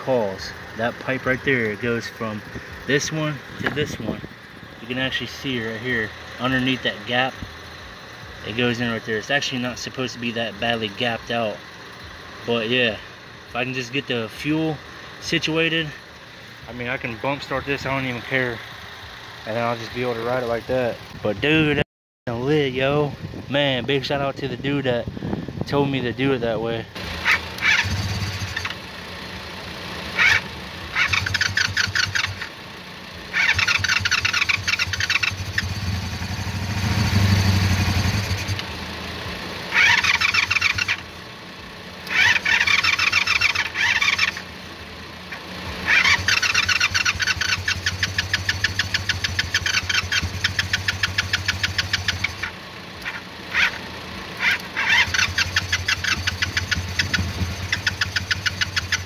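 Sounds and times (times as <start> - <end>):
motorcycle engine cranking and firing: 0.5 - 11.4, 27.0 - 29.4, 30.1 - 41.2, 42.0 - 44.6, 45.3 - 59.0.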